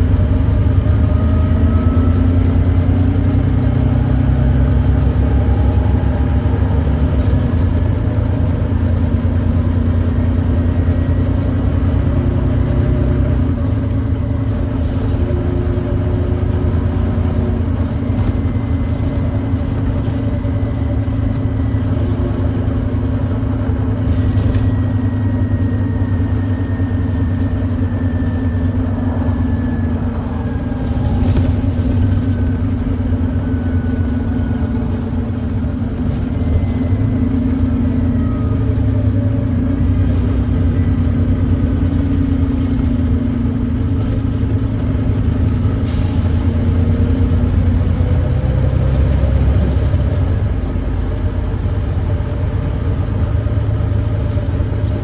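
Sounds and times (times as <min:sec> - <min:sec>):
bus diesel engine running: 0:00.0 - 0:55.0
faint whine changing pitch: 0:15.8 - 0:41.4.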